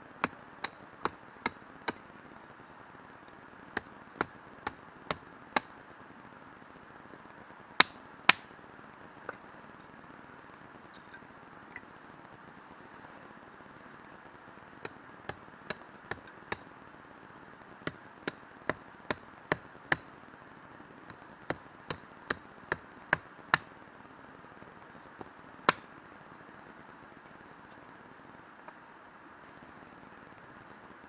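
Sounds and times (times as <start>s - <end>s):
sharp chopping knocks: 25.7s - 25.9s.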